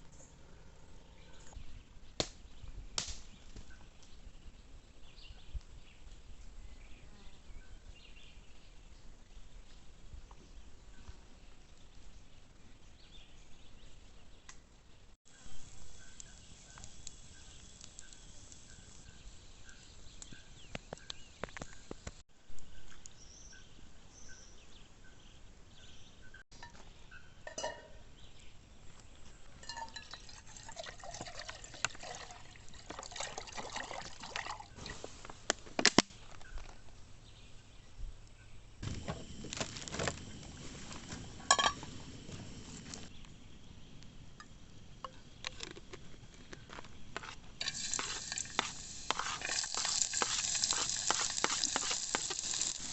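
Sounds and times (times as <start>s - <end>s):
liquid pouring and trickling: 29.6s - 35.0s, 47.6s - 52.9s.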